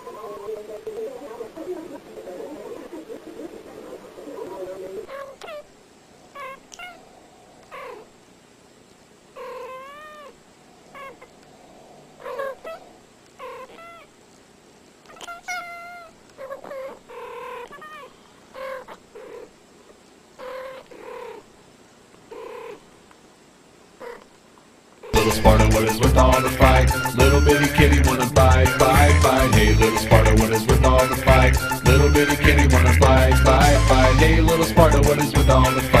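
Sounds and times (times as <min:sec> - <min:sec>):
cat meowing: 0:06.3 - 0:07.0, 0:09.4 - 0:10.4, 0:15.1 - 0:19.0.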